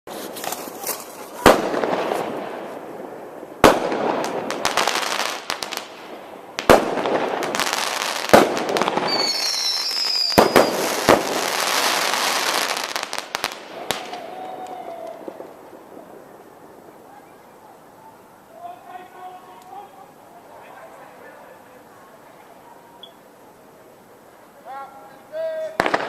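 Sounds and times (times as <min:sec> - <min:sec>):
fireworks bangs with crackling: 0:00.1 - 0:18.0, 0:25.6 - 0:26.0.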